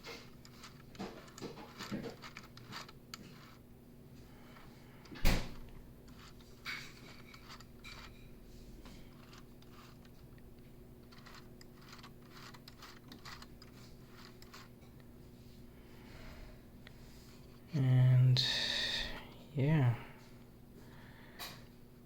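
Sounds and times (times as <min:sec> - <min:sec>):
plastic clicks and rattles: 0:00.0 - 0:03.6, 0:11.0 - 0:15.0.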